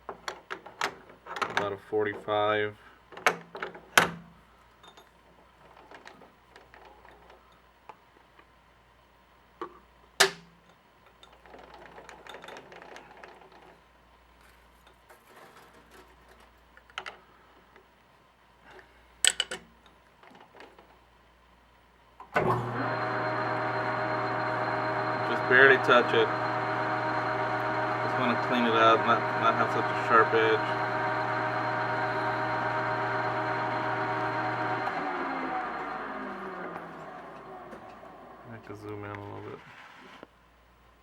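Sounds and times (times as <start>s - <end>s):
clicks and metal knocks: 0.0s - 2.3s
lathe running with steady hum: 22.4s - 38.5s.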